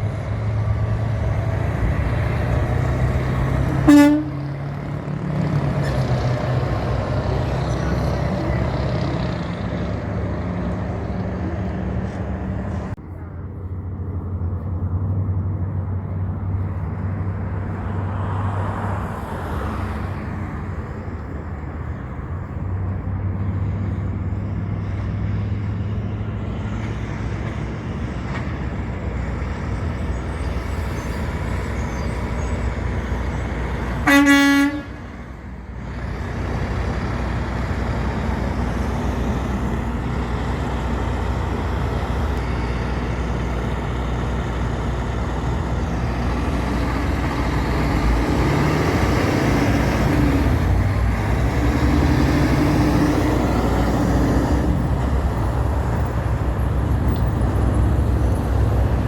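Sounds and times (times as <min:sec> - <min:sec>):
truck engines running: 0:00.0 - 0:59.0
truck horn blast: 0:03.6 - 0:04.7, 0:33.9 - 0:35.4.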